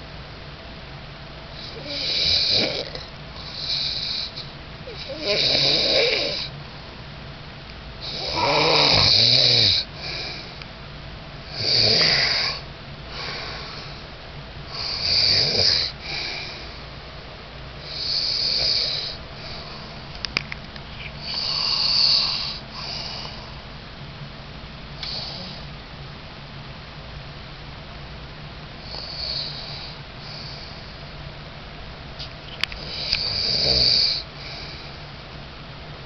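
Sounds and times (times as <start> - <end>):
man snoring: 1.6 - 6.5, 8.0 - 10.5, 11.5 - 12.6, 14.7 - 16.5, 17.8 - 19.2, 21.2 - 23.3, 28.8 - 30.6, 32.8 - 34.6
quiet breath: 12.5 - 14.1, 28.9 - 31.1, 34.2 - 35.1.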